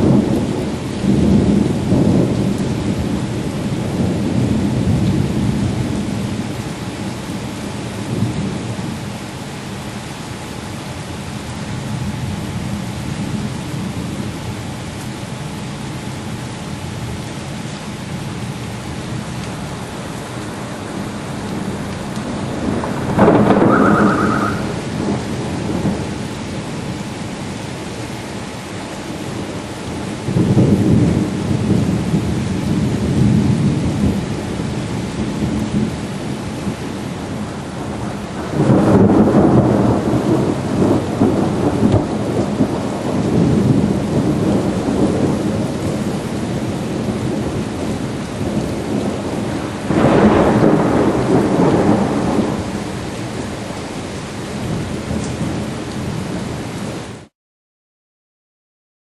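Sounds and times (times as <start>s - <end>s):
thunder rumbling: 0.0s - 7.2s, 18.4s - 27.4s, 28.8s - 57.2s
heavy rain: 0.0s - 57.3s.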